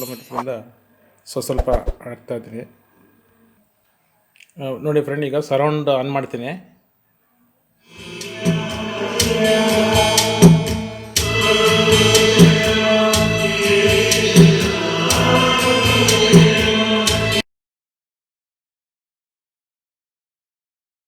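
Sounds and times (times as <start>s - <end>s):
song with choral singing: 7.9s - 17.4s.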